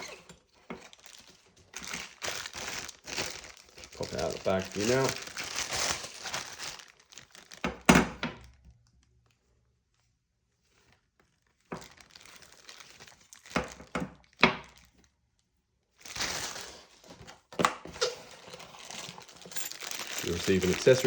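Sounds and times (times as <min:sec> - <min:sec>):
plastic bag crinkling: 0:00.7 - 0:07.9, 0:11.4 - 0:13.9, 0:16.0 - 0:17.3, 0:18.2 - 0:21.0.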